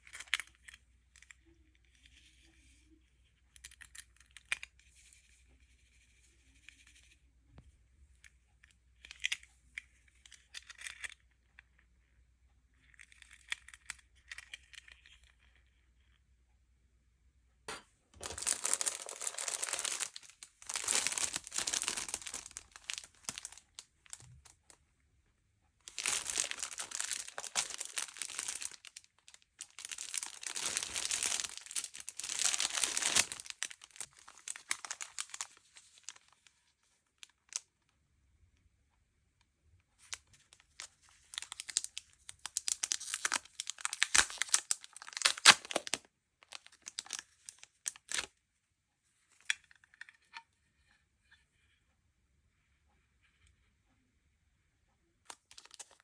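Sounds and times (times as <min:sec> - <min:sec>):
packaging crinkling and tearing: 0:18.2 - 0:24.5, 0:25.9 - 0:36.4, 0:40.8 - 0:48.3, 0:55.3 - 0:56.0.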